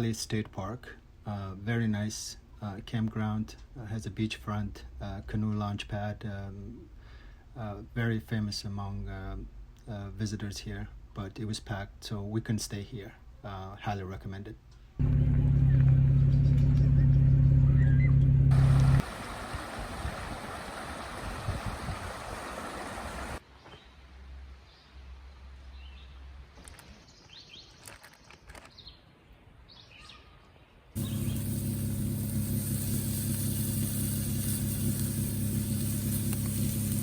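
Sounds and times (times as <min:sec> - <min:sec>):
birds chirping: 0:15.0 - 0:21.2, 0:26.8 - 0:37.0
vehicle engine running: 0:15.0 - 0:23.4, 0:31.0 - 0:37.0.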